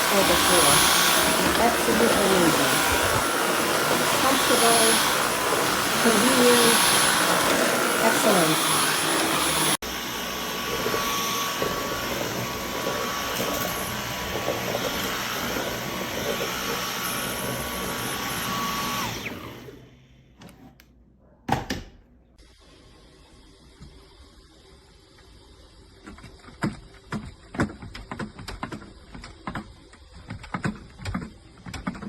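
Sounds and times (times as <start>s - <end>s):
vacuum cleaner whining: 0.0s - 20.3s.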